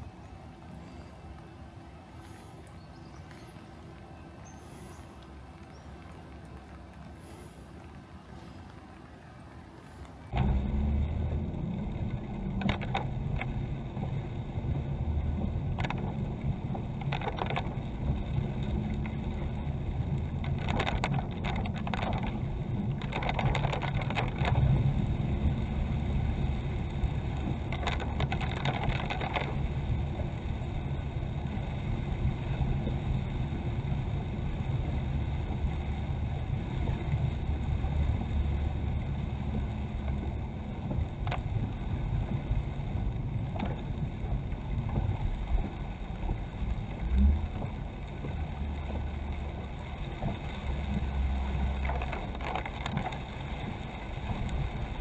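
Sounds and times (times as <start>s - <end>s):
vehicle engine rumble: 0.0s - 55.0s.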